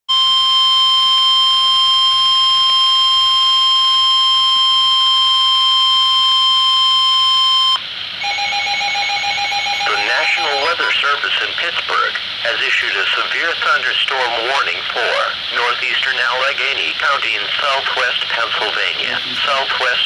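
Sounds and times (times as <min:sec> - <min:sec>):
loud steady electronic tone: 0:00.1 - 0:20.0
fainter lower steady tone: 0:00.2 - 0:11.2.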